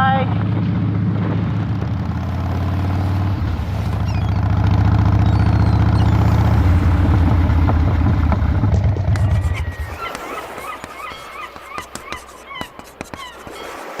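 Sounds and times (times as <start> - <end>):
motorcycle engine at low revs: 0.0 - 10.0.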